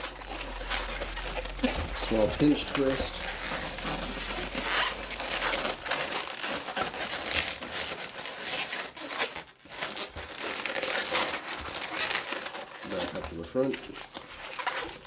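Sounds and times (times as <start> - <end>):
balloons rubbing and squeaking: 0.0 - 15.0.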